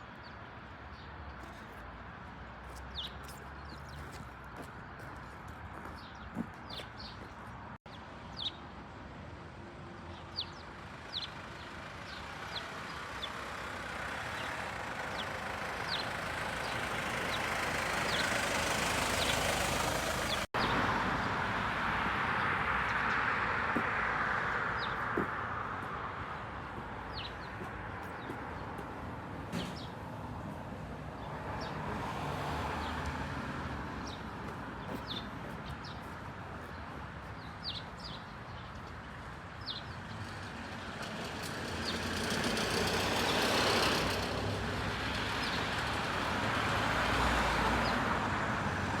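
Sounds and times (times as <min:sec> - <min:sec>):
road traffic: 0:00.0 - 0:49.0
vehicle passing: 0:11.0 - 0:37.3, 0:40.2 - 0:49.0.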